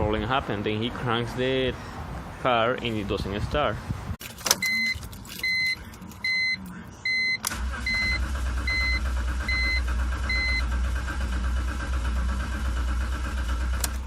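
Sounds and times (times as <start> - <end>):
car engine cranking: 4.2 - 14.0
dashboard warning chime beeping: 4.5 - 10.7
starter click: 13.7 - 14.0.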